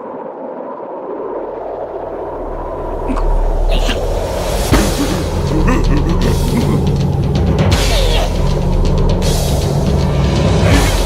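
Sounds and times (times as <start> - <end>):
cartoon soundtrack music with drums: 3.2 - 11.0.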